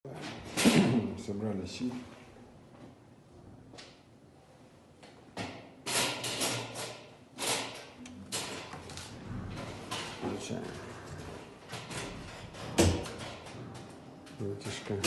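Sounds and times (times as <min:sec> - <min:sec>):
clattering and rubbing of handling: 0:05.9 - 0:15.0.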